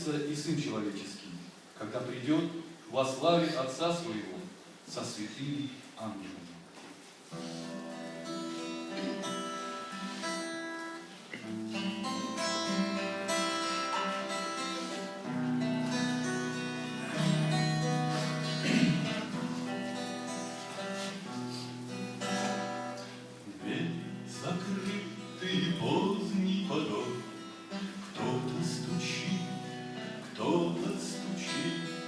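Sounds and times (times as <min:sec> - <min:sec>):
acoustic guitar chords: 0:07.2 - 0:32.0.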